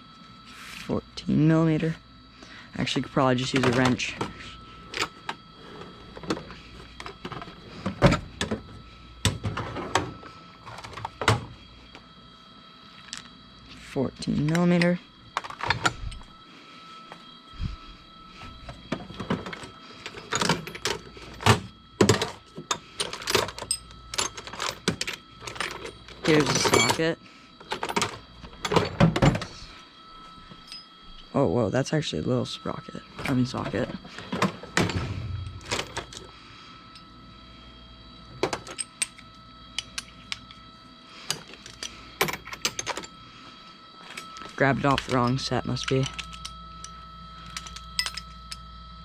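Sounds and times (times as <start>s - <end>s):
faint steady hum: 0.0s - 49.0s
metal tools clattering: 3.4s - 11.5s, 18.8s - 29.6s, 33.1s - 36.3s, 41.3s - 43.1s, 44.0s - 48.6s.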